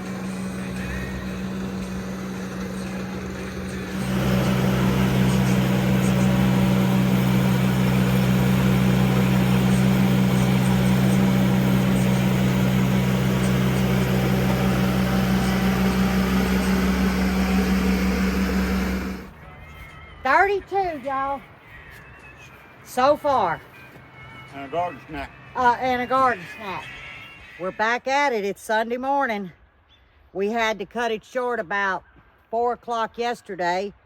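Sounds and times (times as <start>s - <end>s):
skid steer engine running: 0.0s - 19.5s.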